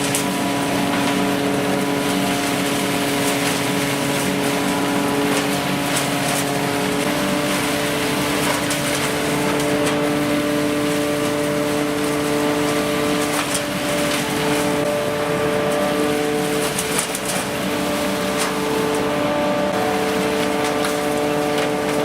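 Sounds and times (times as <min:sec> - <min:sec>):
leaf vacuum whining: 0:00.0 - 0:22.0.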